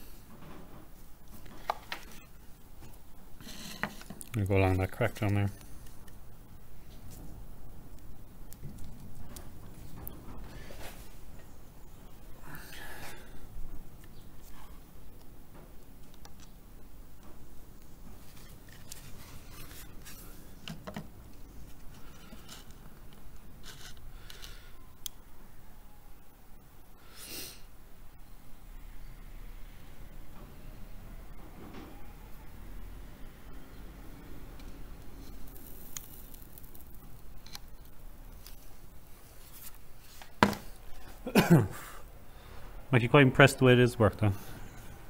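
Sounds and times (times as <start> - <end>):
low steady hum: 0.0 - 45.0
plastic scraping and rubbing: 18.1 - 21.0, 23.6 - 24.5
clicks and light scraping: 34.6 - 41.2.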